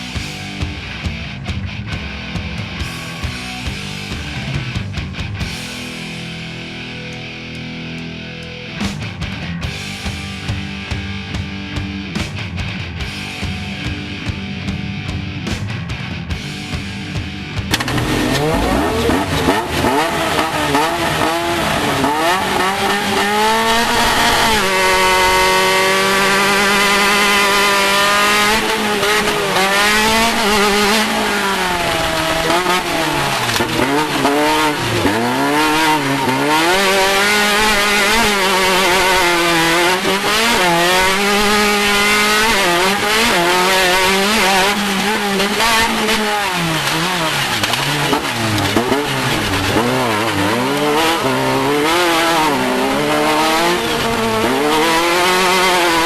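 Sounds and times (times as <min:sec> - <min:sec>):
race car engine revving: 0:16.4 - 0:56.0.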